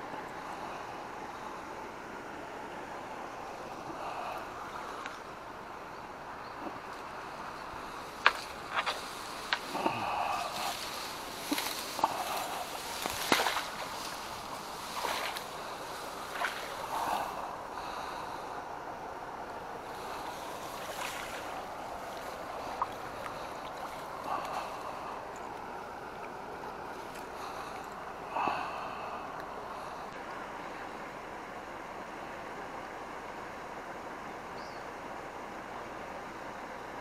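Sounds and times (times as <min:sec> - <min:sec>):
water lapping against breakwater: 0:06.6 - 0:18.4, 0:19.8 - 0:28.1.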